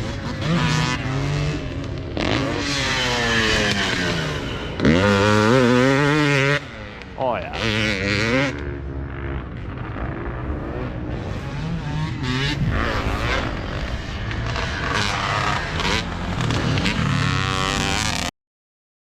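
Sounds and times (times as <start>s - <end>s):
dirt bike engine revving: 0.0s - 18.3s
low rumble: 9.3s - 17.5s.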